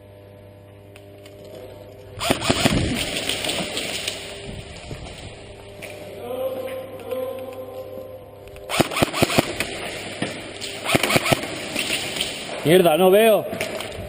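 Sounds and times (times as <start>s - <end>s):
airsoft gun shots: 2.2s - 4.1s, 8.7s - 12.5s
faint voice-like drone: 6.0s - 8.6s.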